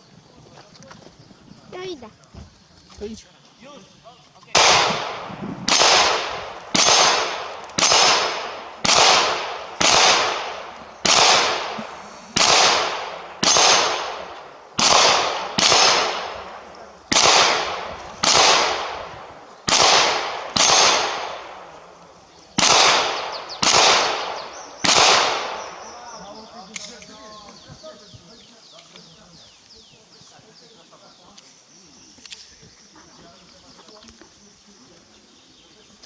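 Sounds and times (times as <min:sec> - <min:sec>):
echoing gunshots: 0:04.5 - 0:26.2.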